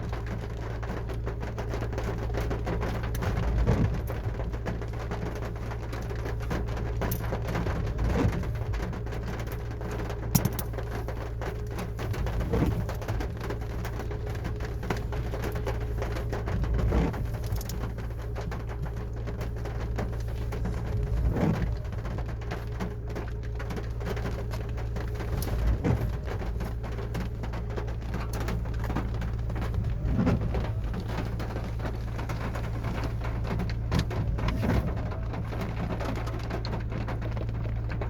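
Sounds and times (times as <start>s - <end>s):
low steady hum: 0.0s - 38.0s
rain pattering on car roof: 0.0s - 38.0s.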